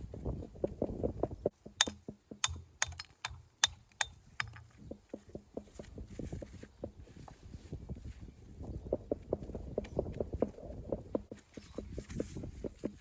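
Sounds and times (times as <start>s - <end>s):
sharp knocks on stone: 1.6s - 5.7s.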